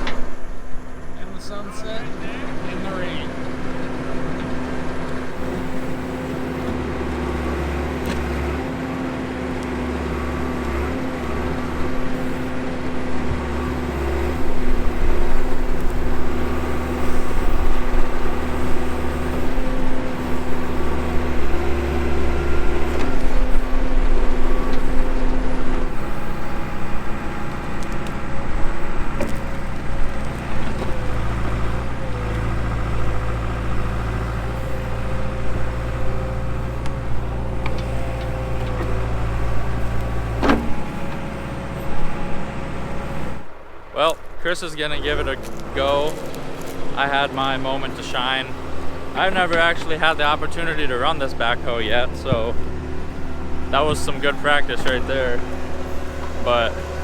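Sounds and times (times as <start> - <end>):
backhoe diesel engine: 0.0 - 57.0.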